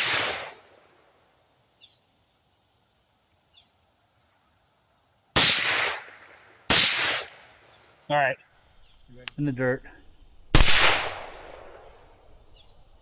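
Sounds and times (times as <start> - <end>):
suppressed rifle shot: 0.0 - 0.7, 5.4 - 7.4, 10.5 - 12.2
faint bird chirps: 1.7 - 2.2, 3.4 - 4.6, 7.6 - 9.2, 12.1 - 13.0.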